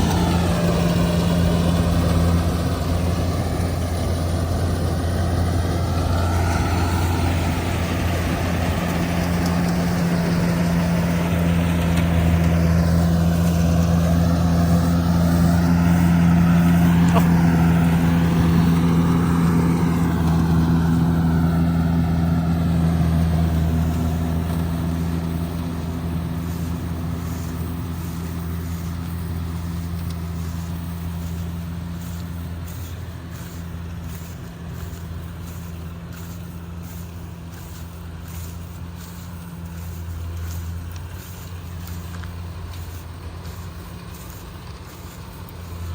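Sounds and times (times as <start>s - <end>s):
combine harvester diesel drone: 0.0s - 45.9s.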